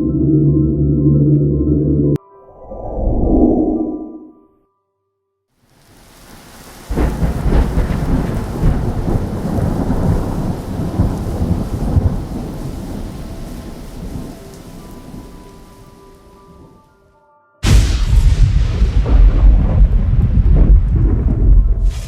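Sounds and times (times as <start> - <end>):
deep rumbling boom: 17.6 - 22.0.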